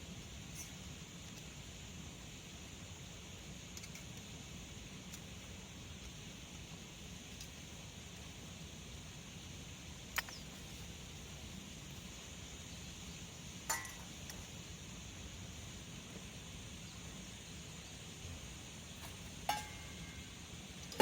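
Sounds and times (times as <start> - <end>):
faint outdoor hiss: 0.0 - 21.0
metallic clink: 13.7 - 14.4, 19.0 - 20.3.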